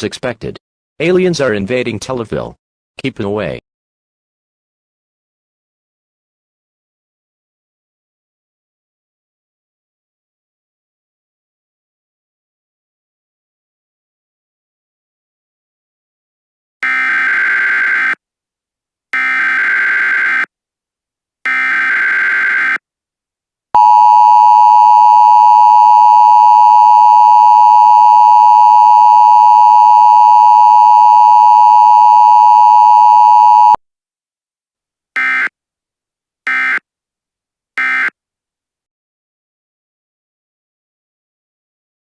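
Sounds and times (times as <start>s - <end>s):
steady attention tone: 23.8s - 33.8s.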